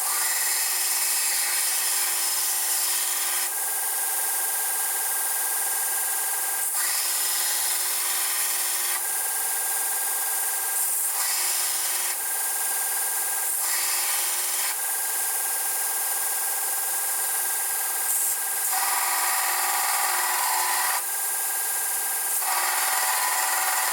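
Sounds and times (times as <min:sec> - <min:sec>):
power tool whining: 0:17.8 - 0:23.9.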